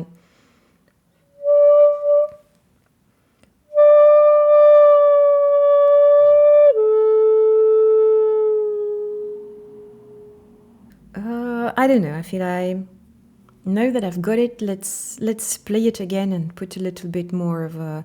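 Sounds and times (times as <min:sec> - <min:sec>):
bamboo flute playing: 0:01.3 - 0:02.6, 0:03.7 - 0:10.8.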